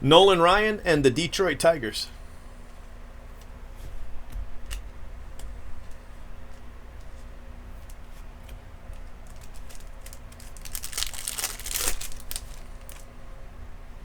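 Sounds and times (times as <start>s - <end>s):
wrapper crinkling and tearing: 9.2s - 13.1s.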